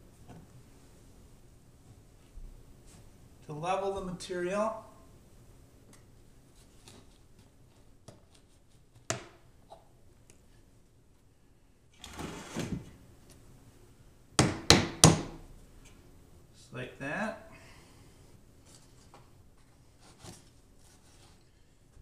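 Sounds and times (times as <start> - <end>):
sharp knocks on wood: 14.4 - 15.4.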